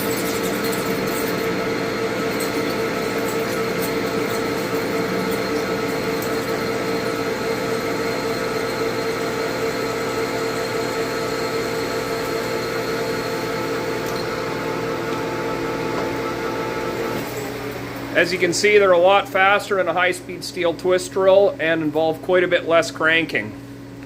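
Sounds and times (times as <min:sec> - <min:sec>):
drill cutting metal workpiece: 0:00.0 - 0:17.6
lathe whining: 0:00.0 - 0:20.1.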